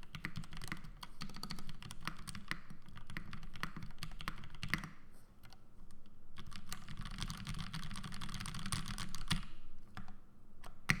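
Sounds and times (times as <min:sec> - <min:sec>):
mechanical keyboard typing: 0:00.0 - 0:05.6, 0:06.4 - 0:09.4.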